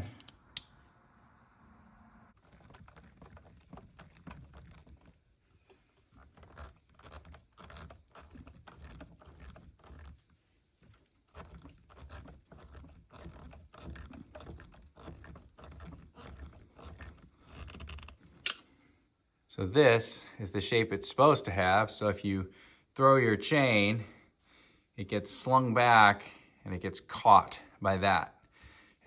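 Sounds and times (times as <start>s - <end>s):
faint clicks and scrapes: 2.4s - 19.0s.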